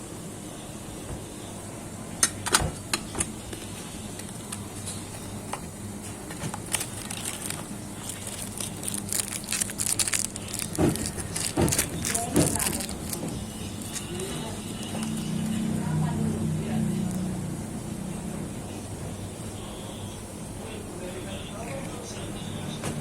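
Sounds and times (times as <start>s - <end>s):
steady low hum: 0.0s - 22.8s.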